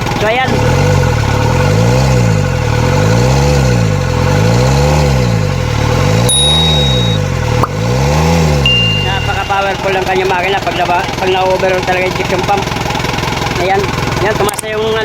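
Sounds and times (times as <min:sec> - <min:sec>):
diesel engine idling unevenly: 0:00.0 - 0:15.0
short high beeps: 0:06.3 - 0:07.4, 0:08.6 - 0:10.3.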